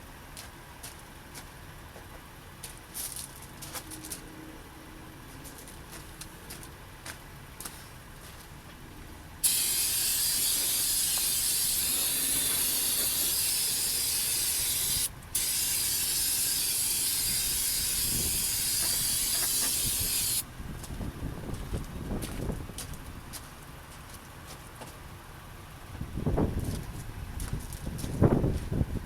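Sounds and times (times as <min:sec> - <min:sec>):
pressurised spray hissing: 0:09.4 - 0:20.4.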